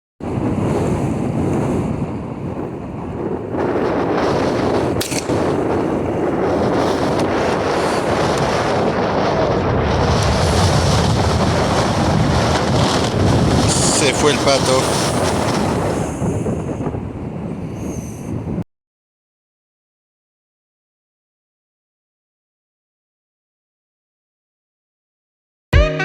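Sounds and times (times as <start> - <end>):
wind buffeting microphone: 0.2 - 18.6.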